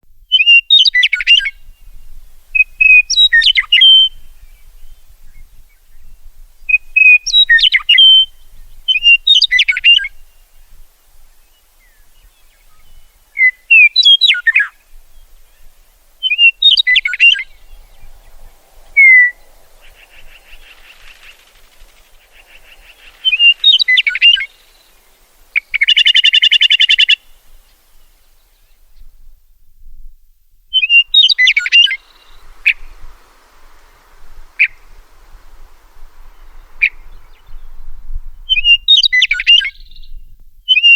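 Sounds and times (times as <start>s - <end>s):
meadowlark singing: 0.2s - 29.6s, 30.7s - 40.9s.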